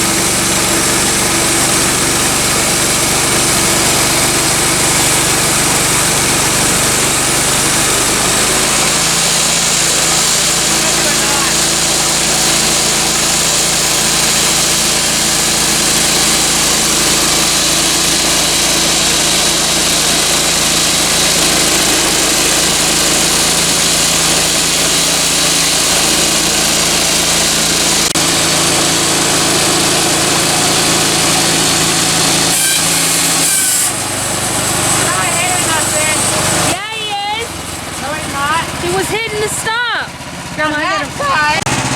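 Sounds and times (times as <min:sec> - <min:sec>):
band blade sawing through log: 0:00.0 - 0:36.8
small gasoline engine running: 0:00.0 - 0:41.9.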